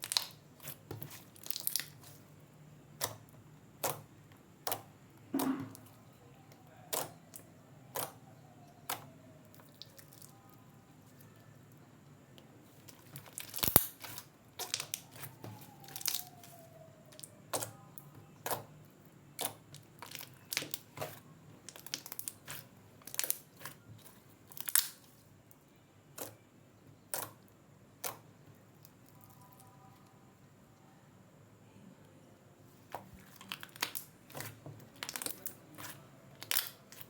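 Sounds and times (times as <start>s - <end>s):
slime popping and clicking: 13.2s - 15.2s, 24.5s - 25.0s.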